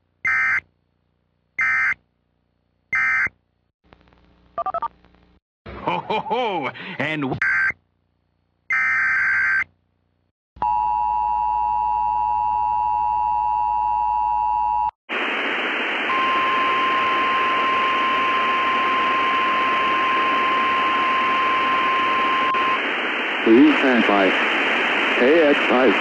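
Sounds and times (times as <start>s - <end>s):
static hiss: 3.9s - 5.4s, 15.1s - 26.0s.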